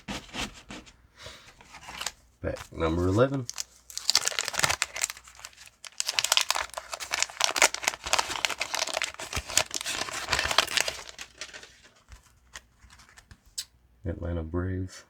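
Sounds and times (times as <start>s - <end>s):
wax paper wrapper tearing and crackling: 1.8s - 13.4s.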